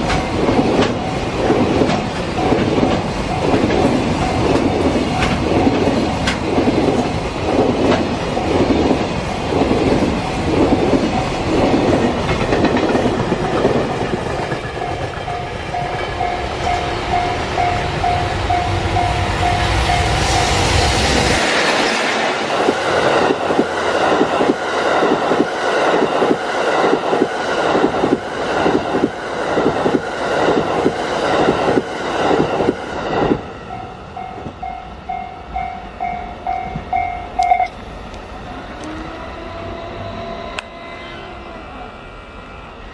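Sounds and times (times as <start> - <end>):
level-crossing alarm clanging: 0.0 - 7.2, 7.9 - 20.8, 33.6 - 37.8
train rumbling over rails: 0.0 - 42.9.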